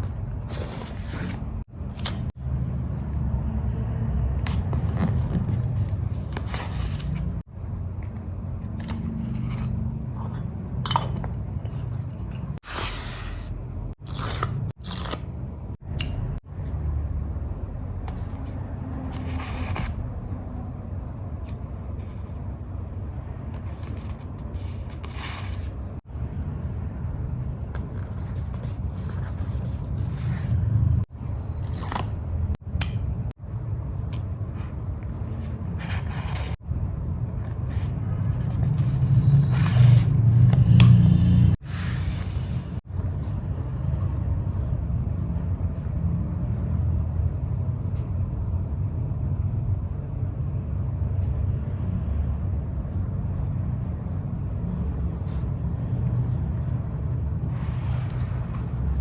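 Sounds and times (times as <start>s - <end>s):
paper rubbing and scraping: 0.0s - 2.3s, 4.6s - 7.5s, 18.4s - 20.2s, 23.6s - 26.0s, 27.8s - 31.0s, 34.6s - 36.6s, 37.4s - 40.6s, 57.5s - 59.0s
paper swishes: 57.5s - 59.0s.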